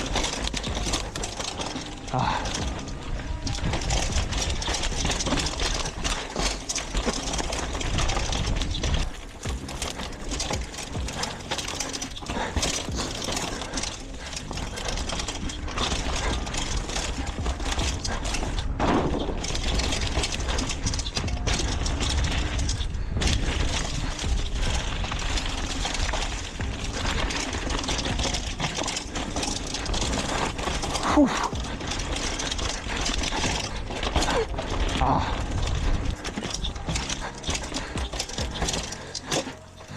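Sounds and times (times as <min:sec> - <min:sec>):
bike rattling over bumps: 0:00.0 - 0:39.9
tyre noise: 0:00.0 - 0:39.9
rushing wind: 0:12.3 - 0:28.3.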